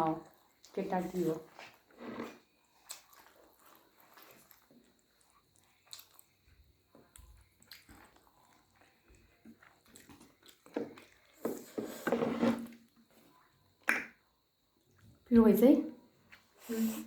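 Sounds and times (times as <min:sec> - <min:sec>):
chewing and biting: 0:02.7 - 0:06.4, 0:07.0 - 0:11.4
wet mouth clicks: 0:13.8 - 0:14.2.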